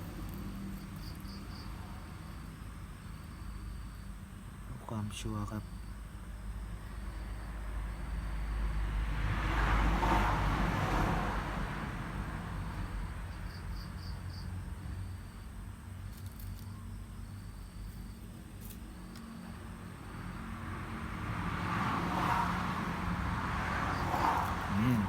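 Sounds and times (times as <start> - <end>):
insect chirps: 0.0 - 10.3, 11.4 - 25.0
vehicle passing by: 7.2 - 13.9, 19.7 - 25.0.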